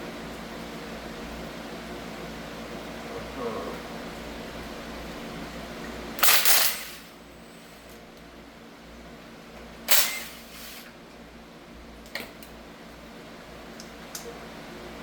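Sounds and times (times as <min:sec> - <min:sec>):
steady fan hum: 0:00.0 - 0:15.0
pneumatic tool bursts: 0:06.2 - 0:07.9, 0:09.9 - 0:10.9.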